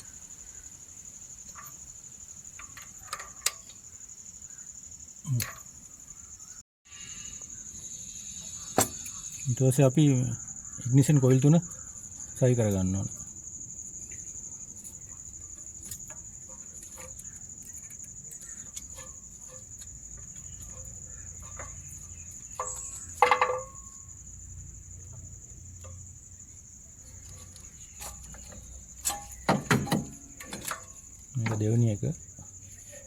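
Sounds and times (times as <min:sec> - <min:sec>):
ignition coils clicking into place: 0:27.2 - 0:31.7.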